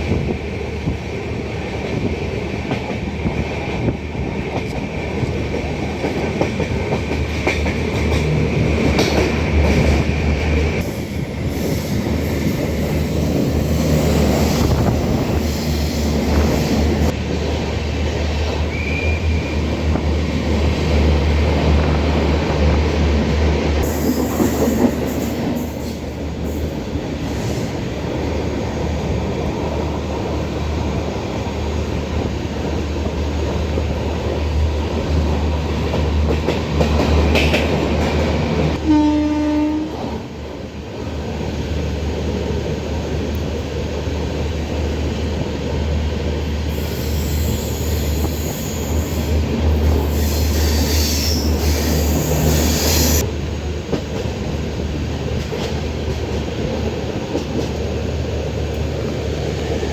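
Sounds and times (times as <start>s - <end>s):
train rumble and clatter: 0.0s - 59.9s
train horn blast: 38.8s - 40.2s.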